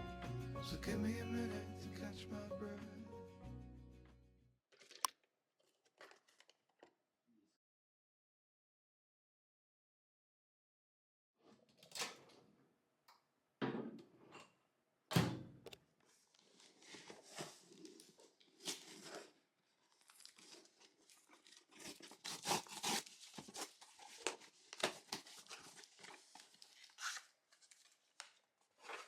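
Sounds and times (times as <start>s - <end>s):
packaging torn and crinkled: 4.7s - 6.6s, 17.8s - 28.4s.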